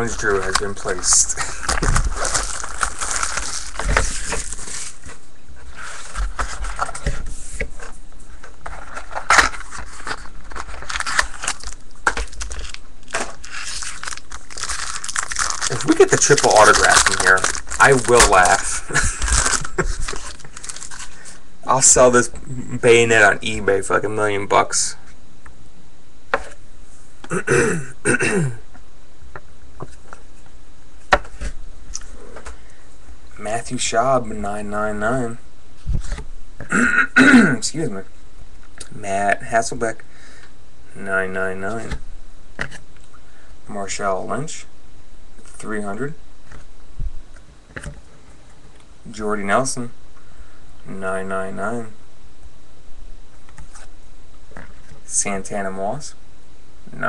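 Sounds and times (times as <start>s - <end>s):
card box packaging being opened: 0.1s - 5.2s, 5.8s - 21.4s
man clearing throat: 27.2s - 28.6s, 36.6s - 37.6s.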